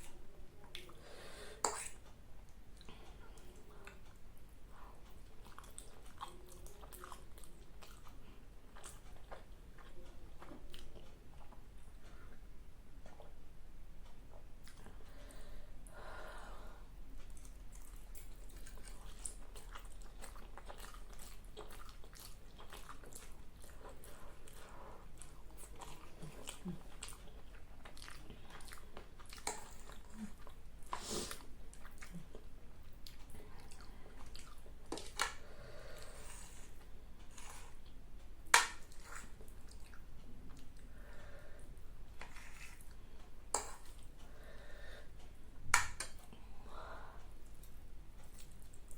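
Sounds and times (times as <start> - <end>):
chewing noodles: 4.8 - 11.9, 17.2 - 37.9, 38.8 - 40.9.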